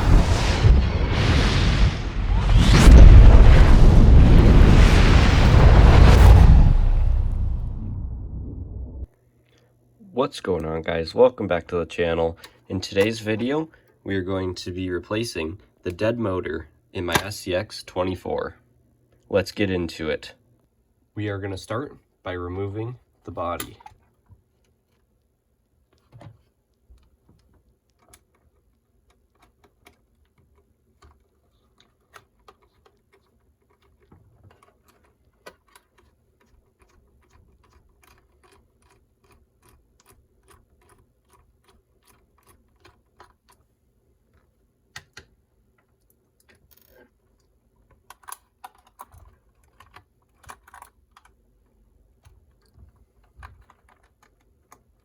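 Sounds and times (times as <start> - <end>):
plastic parts clicking: 25.9 - 43.7, 44.3 - 55.0.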